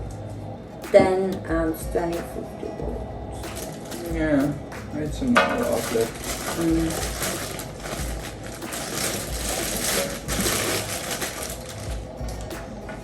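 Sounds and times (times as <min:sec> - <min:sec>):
packaging crinkling and rustling: 0:03.5 - 0:04.2, 0:05.4 - 0:12.5.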